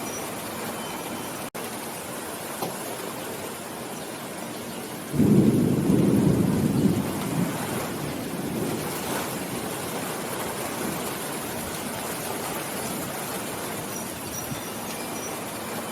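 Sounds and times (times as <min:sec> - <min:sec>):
steady rain falling: 0:00.0 - 0:15.9
low rumble of thunder: 0:05.1 - 0:13.4.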